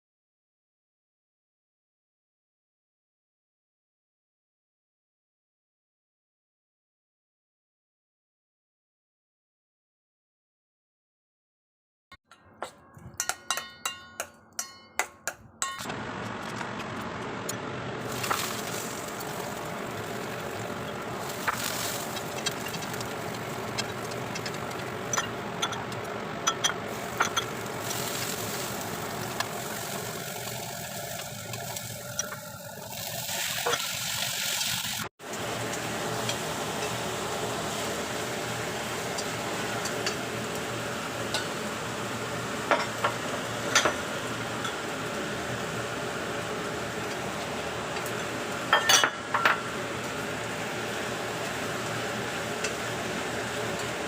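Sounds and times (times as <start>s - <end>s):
utensil clinking on cookware: 13.2s - 15.9s, 21.4s - 28.0s, 48.7s - 49.6s
food sizzling in a pan: 18.0s - 25.8s, 26.9s - 54.0s.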